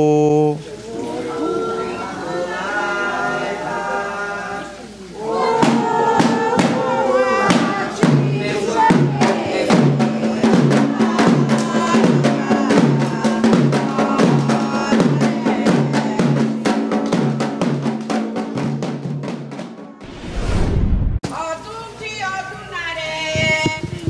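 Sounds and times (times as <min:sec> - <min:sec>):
quick drum strokes: 0:05.3 - 0:21.2.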